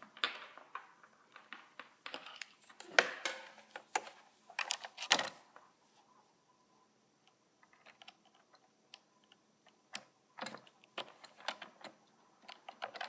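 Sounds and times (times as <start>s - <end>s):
keyboard clicks and knocks: 7.6s - 13.0s.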